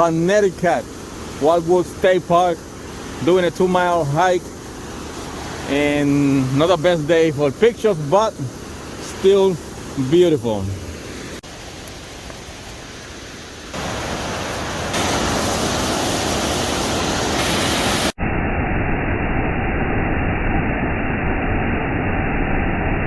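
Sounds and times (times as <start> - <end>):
waterfall rushing: 0.0 - 18.2.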